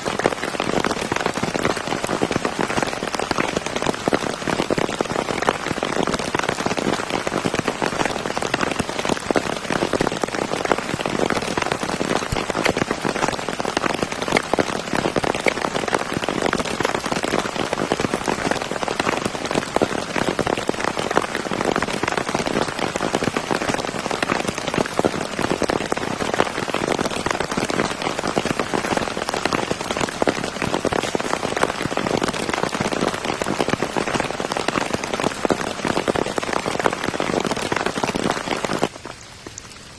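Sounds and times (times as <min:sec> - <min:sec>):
heavy rain pattering: 0:00.0 - 0:39.9.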